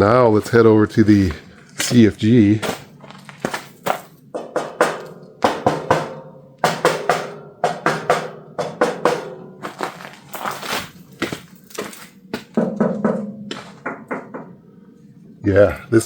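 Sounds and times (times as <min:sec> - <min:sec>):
knocks on steel panels: 0:02.6 - 0:10.1, 0:12.3 - 0:14.6.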